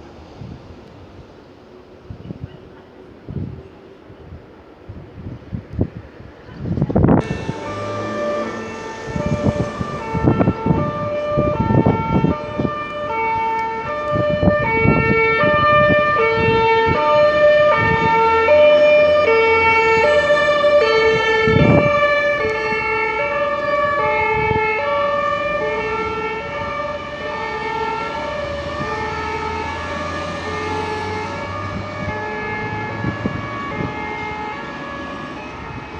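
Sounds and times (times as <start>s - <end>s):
fire engine two-tone sirens: 7.1s - 35.9s.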